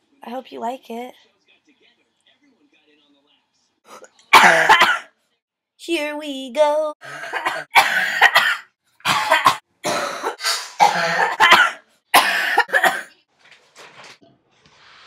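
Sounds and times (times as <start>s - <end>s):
person coughing harshly: 4.0s - 5.1s, 7.0s - 13.2s.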